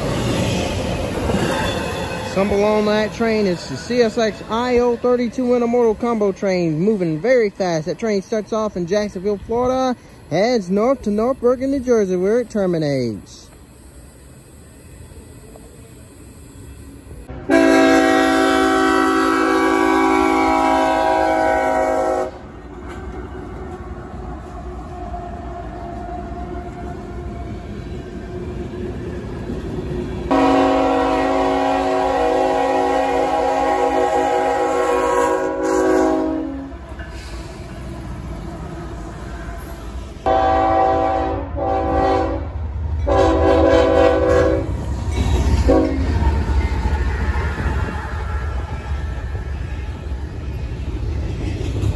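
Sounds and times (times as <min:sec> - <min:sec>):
train rumble: 0:00.0 - 0:51.9
train air horn blasts: 0:17.4 - 0:22.4, 0:30.3 - 0:36.8, 0:40.3 - 0:44.8, 0:45.6 - 0:46.1.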